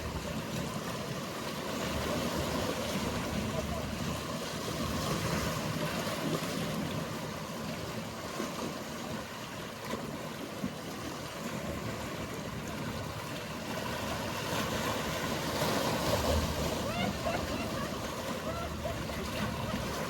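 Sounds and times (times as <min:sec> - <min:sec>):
low hum of boat engines: 0:00.0 - 0:20.0
waves washing: 0:00.0 - 0:20.0.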